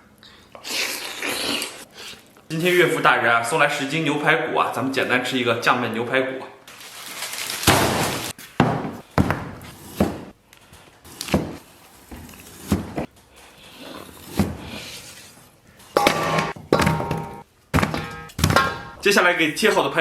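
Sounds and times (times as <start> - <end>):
cleaver chopping through ribs: 9.2 - 10.3, 11.2 - 11.6.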